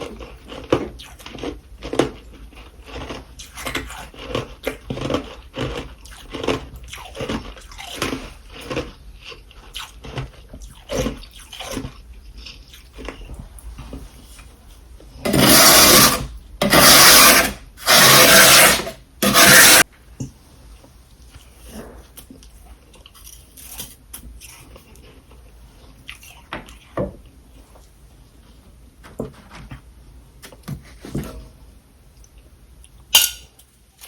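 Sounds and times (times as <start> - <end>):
rasping frost scrapes: 15.2 - 19.8.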